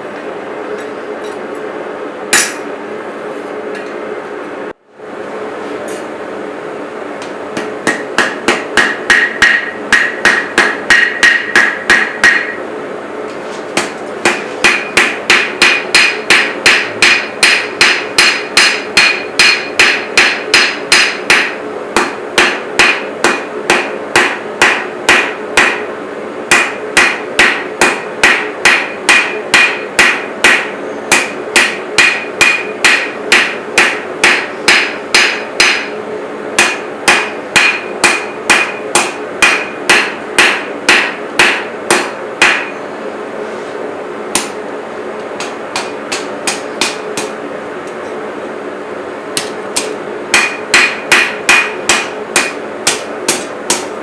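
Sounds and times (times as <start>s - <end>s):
steady hum: 0.0s - 54.0s
hammer blows on an anvil: 2.3s - 2.7s, 7.6s - 12.6s, 13.8s - 25.9s, 26.5s - 36.0s, 36.6s - 42.8s, 49.4s - 53.9s.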